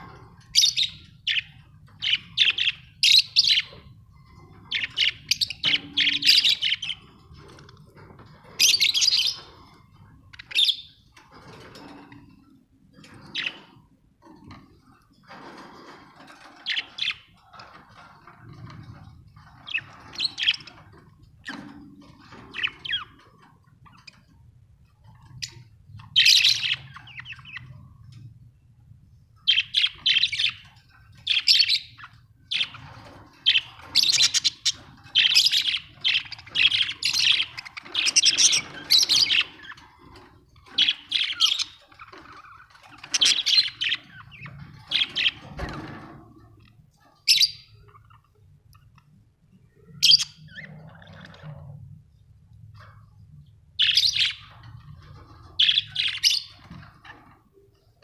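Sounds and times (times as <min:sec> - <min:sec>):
budgerigars chirping: 0:00.5 - 0:07.7, 0:08.5 - 0:11.0, 0:13.2 - 0:13.7, 0:16.5 - 0:17.8, 0:19.4 - 0:23.3, 0:25.2 - 0:27.8, 0:29.4 - 0:45.6, 0:47.2 - 0:48.4, 0:49.9 - 0:51.5, 0:53.8 - 0:57.2.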